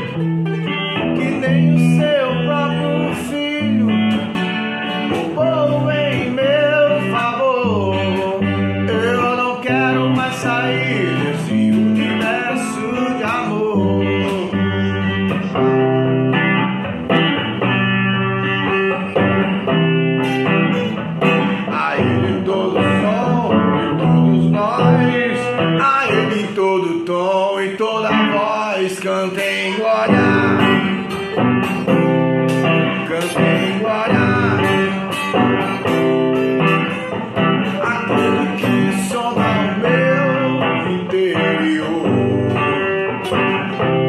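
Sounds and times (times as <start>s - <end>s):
bass line: 0.0s - 26.4s
guitar melody with bending notes: 0.0s - 44.0s.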